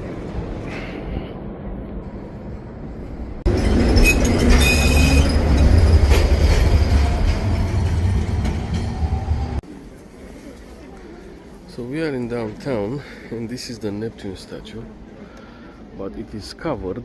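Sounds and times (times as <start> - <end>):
rail vehicle rumbling on track: 0.0 - 11.7
high wheel squeal: 3.5 - 7.4.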